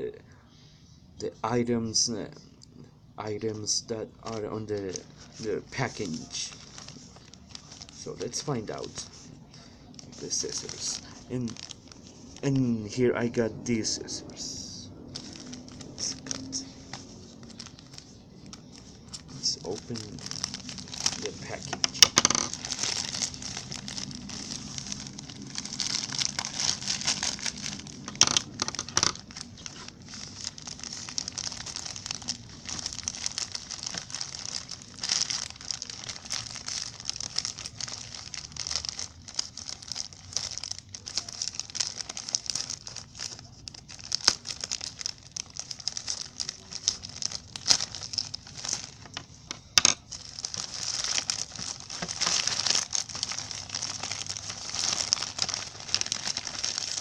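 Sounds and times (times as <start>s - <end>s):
package wrapping being torn open: 4.3s - 9.2s, 10.0s - 12.5s, 15.1s - 57.0s
sharp clicks and crackles: 15.1s - 57.0s.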